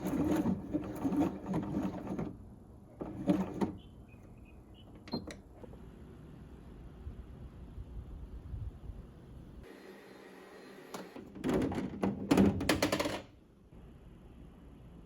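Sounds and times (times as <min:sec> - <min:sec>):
sewing machine stitching: 0:00.0 - 0:02.4.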